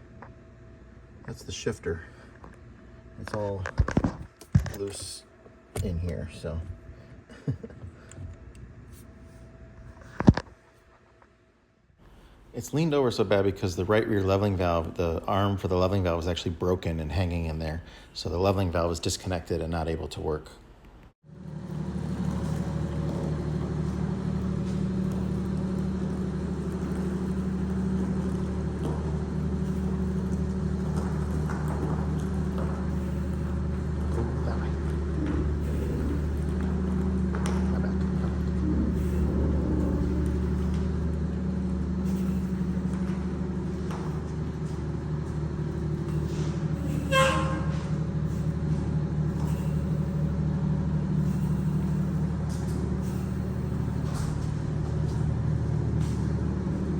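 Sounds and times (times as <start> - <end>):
diesel engine idling: 21.3 - 56.9.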